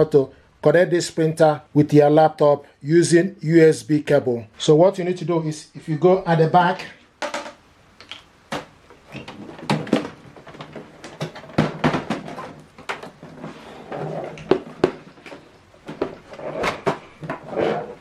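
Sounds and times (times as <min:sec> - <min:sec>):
clicks and knocks handling printer: 0:08.5 - 0:13.4.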